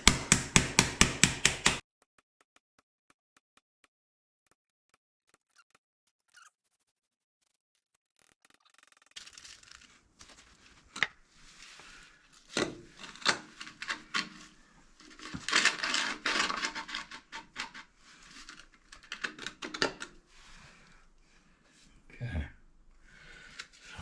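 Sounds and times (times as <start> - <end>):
sharp knocks: 0.0 - 1.8
hand tool scraping concrete: 11.4 - 19.5.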